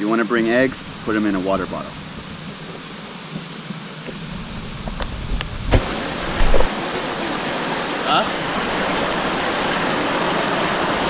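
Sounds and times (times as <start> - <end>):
waterfall rushing: 0.0 - 11.0
microphone handling knock: 2.1 - 6.7.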